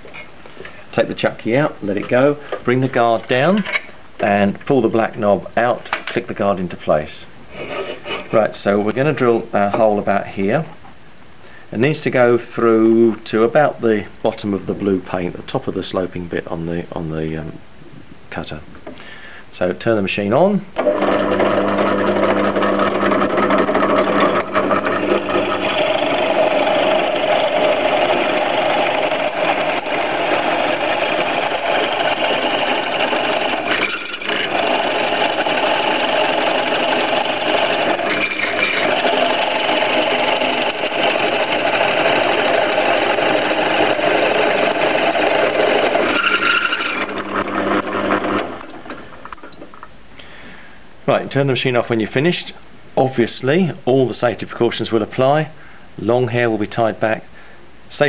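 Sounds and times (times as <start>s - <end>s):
drill bit cutting rasp: 20.8s - 49.0s
drill press motor hum: 20.8s - 49.4s.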